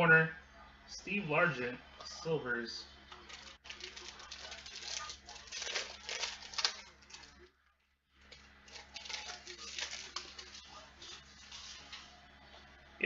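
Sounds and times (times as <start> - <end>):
cards being shuffled: 3.2 - 7.4, 8.2 - 12.1.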